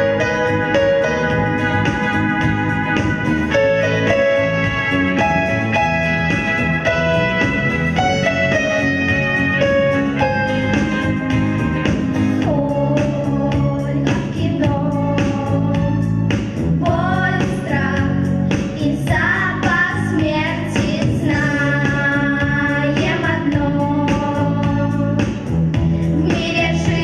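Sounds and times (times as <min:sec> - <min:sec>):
instrumental accompaniment: 0:00.0 - 0:27.0
woman singing: 0:12.4 - 0:16.2, 0:16.8 - 0:25.3, 0:26.1 - 0:27.0.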